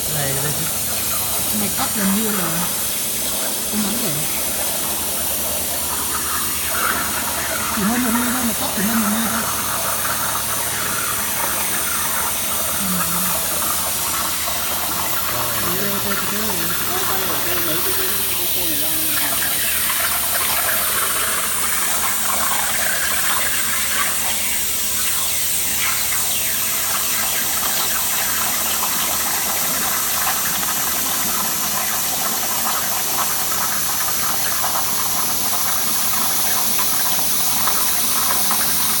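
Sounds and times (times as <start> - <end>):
plasma cutter hissing: 0.0 - 28.8.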